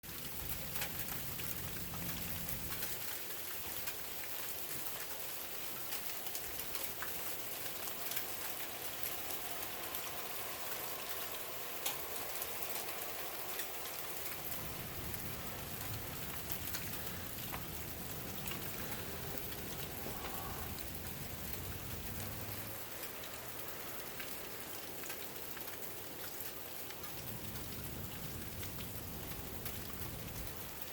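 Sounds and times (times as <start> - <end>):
low rumble: 14.4 - 22.8.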